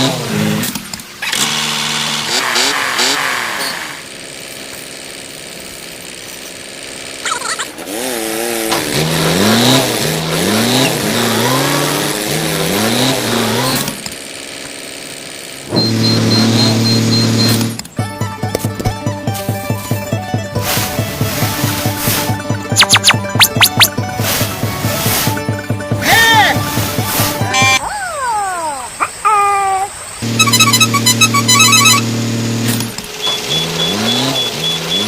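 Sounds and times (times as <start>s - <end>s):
vehicle engine revving: 0.0s - 4.4s, 6.8s - 14.1s, 30.2s - 35.0s.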